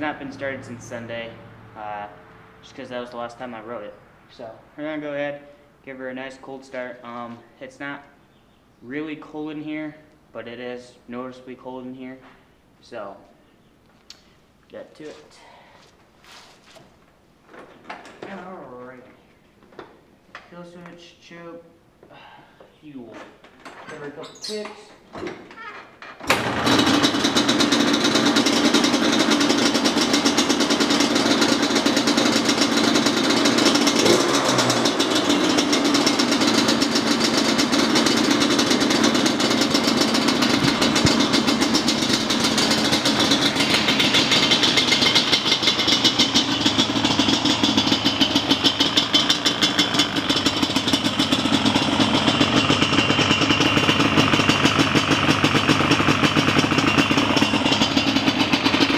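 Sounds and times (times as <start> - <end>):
two-stroke engine running: 26.2 - 58.9
kick-starter: 38.0 - 54.8.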